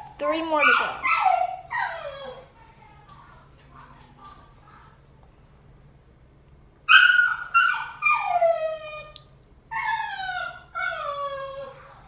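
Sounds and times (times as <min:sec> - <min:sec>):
dog crying: 0:00.4 - 0:02.5, 0:06.9 - 0:12.0.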